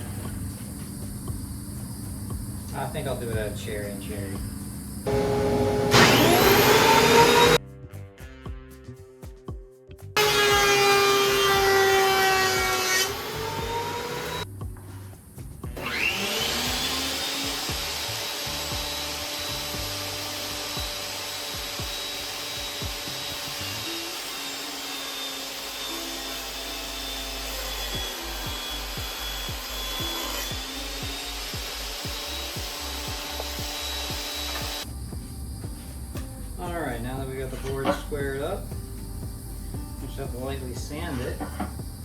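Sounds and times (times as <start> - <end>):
table saw whining: 0.0 - 7.6, 10.2 - 14.5, 15.8 - 35.1.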